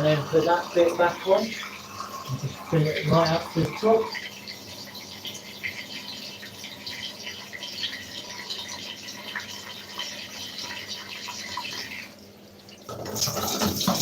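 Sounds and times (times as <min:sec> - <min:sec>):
tap water splashing into container: 0:02.3 - 0:04.3, 0:12.8 - 0:14.0.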